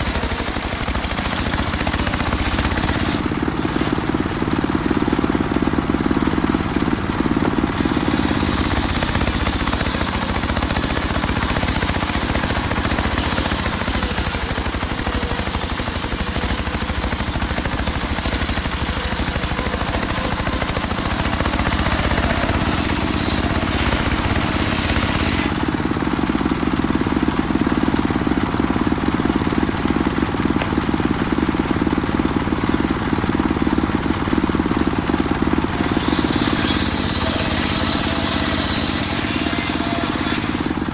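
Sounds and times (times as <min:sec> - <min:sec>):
saw blade cutting through log: 0:00.0 - 0:04.5, 0:07.5 - 0:25.8, 0:35.5 - 0:40.9
circular saw running: 0:00.0 - 0:40.9.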